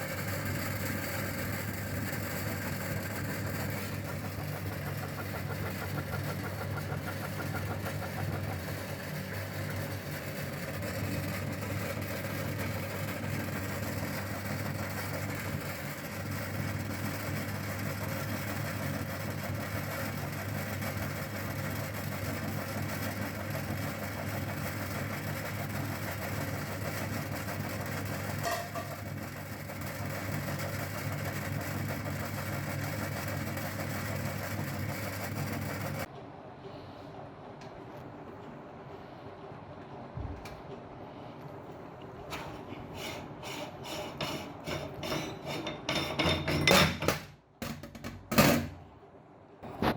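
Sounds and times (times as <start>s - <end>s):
meat grinder motor humming: 0.0s - 36.1s.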